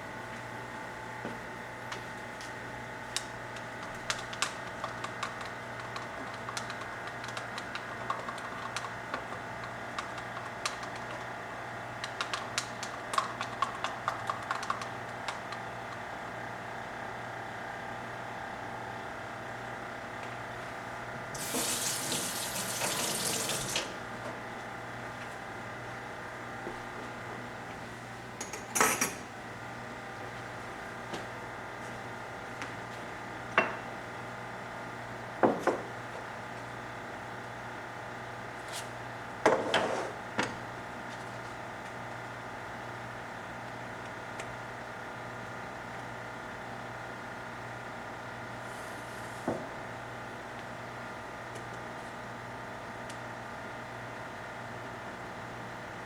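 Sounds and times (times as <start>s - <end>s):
water pouring: 21.4s - 23.9s.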